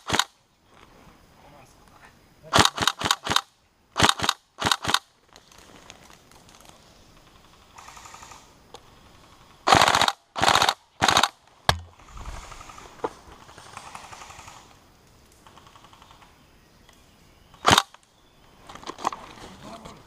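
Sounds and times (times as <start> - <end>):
airsoft rifle bursts: 0.0 - 0.3, 2.5 - 5.1, 9.7 - 12.8, 17.6 - 18.0
dull thump: 11.7 - 12.2.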